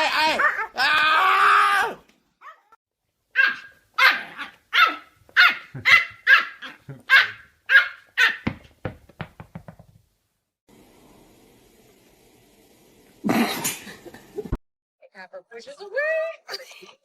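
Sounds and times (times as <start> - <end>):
dog barking: 2.4 - 2.8, 3.4 - 8.6.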